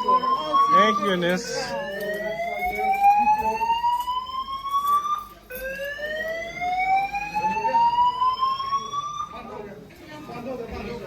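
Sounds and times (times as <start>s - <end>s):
fire alarm whoop: 0.0s - 9.3s.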